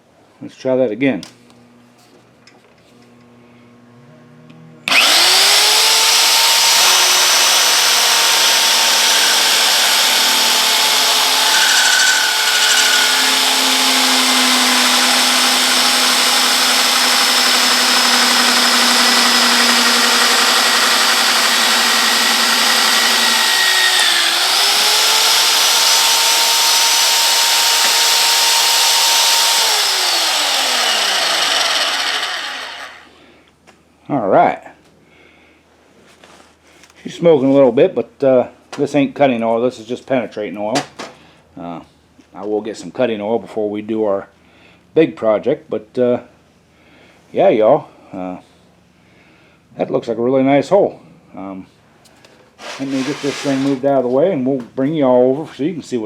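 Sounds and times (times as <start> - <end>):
drill press motor whining: 4.5 - 33.2.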